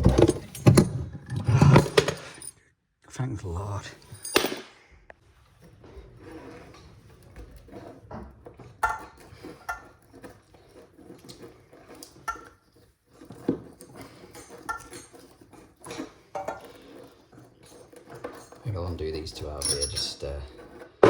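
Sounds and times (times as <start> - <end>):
metal tools clinking: 0.0 - 2.6, 4.0 - 4.8, 18.1 - 20.7.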